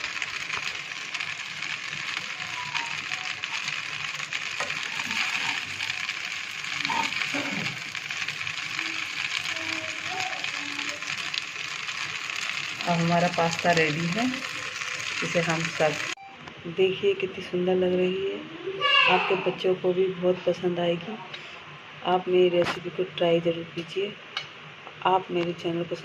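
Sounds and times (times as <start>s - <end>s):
pasta sizzling in a pan: 0.0s - 16.2s.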